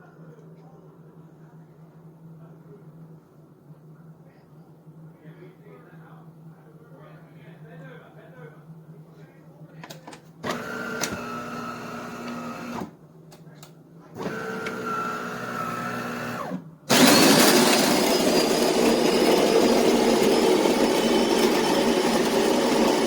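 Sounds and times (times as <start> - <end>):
mechanical whirring with high whine: 10.4 - 12.9
espresso machine motor humming: 10.5 - 12.9, 14.2 - 23.0.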